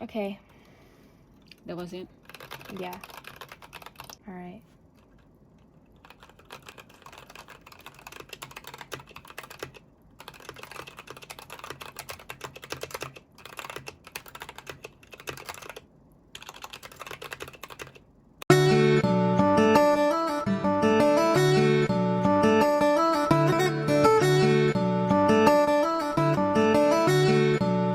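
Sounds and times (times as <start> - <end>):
loud guitar music: 18.5 - 27.9.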